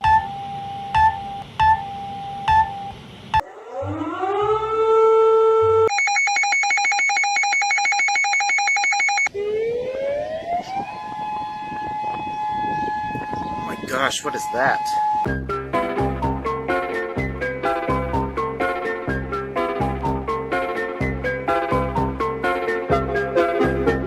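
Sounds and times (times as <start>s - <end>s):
steady alarm tone: 0.0s - 5.0s, 5.9s - 10.1s
rising siren tone: 0.0s - 5.9s, 9.2s - 15.3s.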